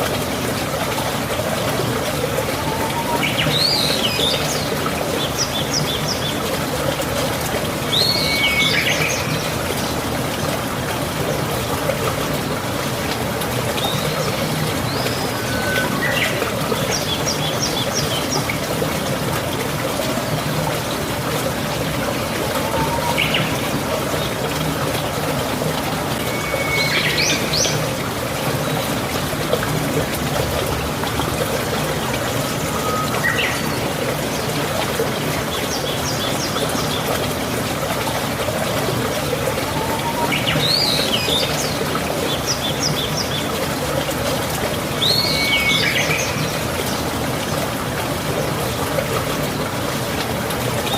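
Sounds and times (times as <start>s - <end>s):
water trickling: 0.0s - 50.9s
songbirds calling: 1.6s - 10.6s, 13.6s - 29.1s, 31.4s - 47.7s.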